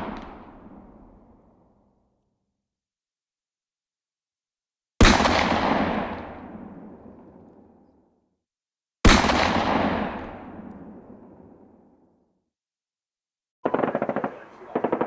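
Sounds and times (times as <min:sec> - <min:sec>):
gunshots with rolling echo: 0:00.0 - 0:02.1, 0:05.0 - 0:08.2, 0:09.0 - 0:12.3, 0:13.6 - 0:15.0.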